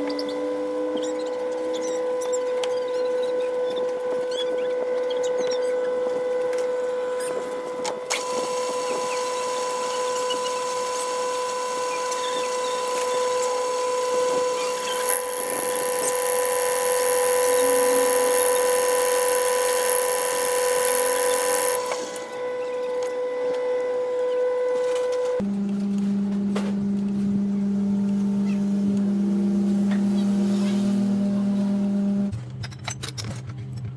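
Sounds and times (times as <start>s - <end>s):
power tool motor whining: 7.1s - 23.0s
high-pitched squeal: 10.0s - 22.3s
cutting or grinding: 11.8s - 22.3s.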